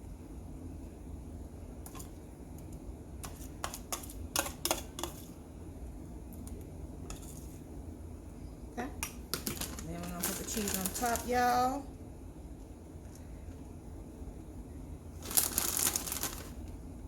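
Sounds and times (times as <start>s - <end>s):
steady low hum: 0.0s - 17.0s
utensil tapping a dish: 3.2s - 5.3s.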